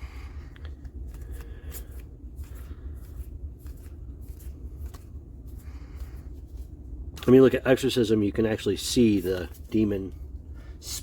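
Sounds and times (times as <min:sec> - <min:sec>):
low steady hum: 0:00.0 - 0:11.0
cards sliding and flicking: 0:00.5 - 0:06.7.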